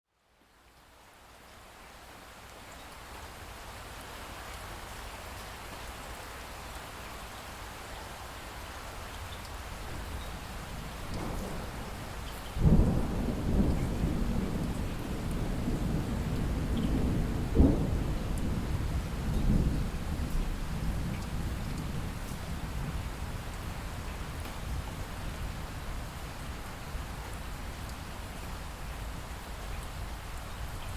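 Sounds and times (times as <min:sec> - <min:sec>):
steady rain: 0:00.1 - 0:30.9
low rolling thunder rumbles: 0:09.9 - 0:26.2.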